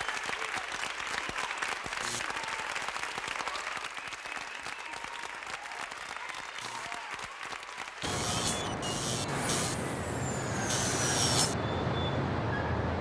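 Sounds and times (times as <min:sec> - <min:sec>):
audience applauding: 0:00.0 - 0:08.8.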